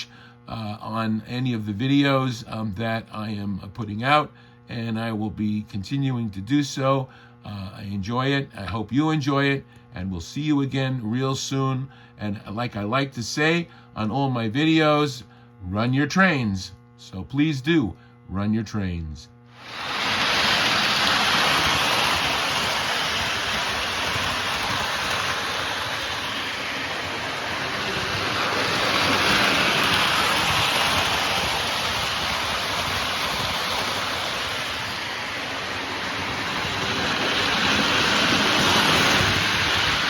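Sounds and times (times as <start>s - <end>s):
toy train rumbling on track: 19.6s - 40.0s.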